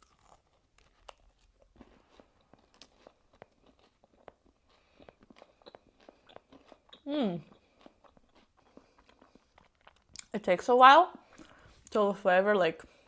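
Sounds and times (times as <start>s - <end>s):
chewing crunchy bar: 0.0s - 10.4s.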